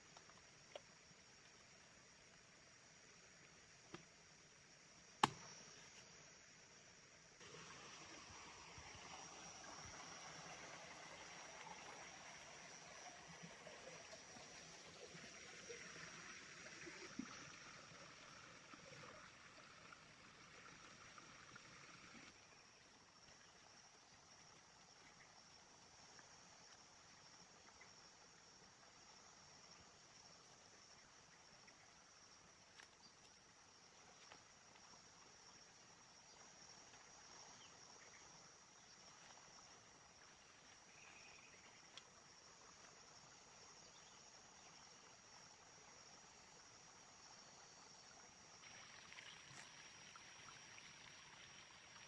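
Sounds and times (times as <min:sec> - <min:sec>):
faint river flowing: 0:00.0 - 0:52.0
insects trilling: 0:00.0 - 0:52.0
sharp tap: 0:05.2 - 0:05.4
faint clicks: 0:41.9 - 0:42.1.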